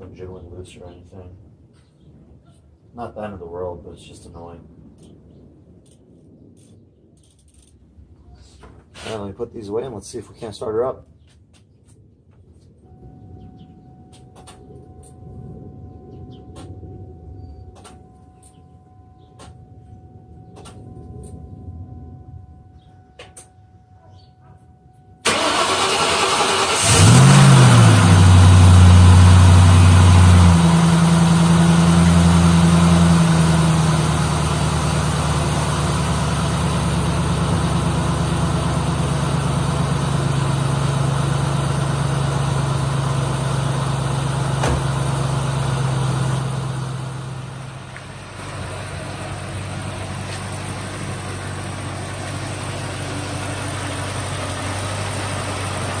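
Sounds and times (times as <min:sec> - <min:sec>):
car engine starting and idling: 0:25.2 - 0:56.0.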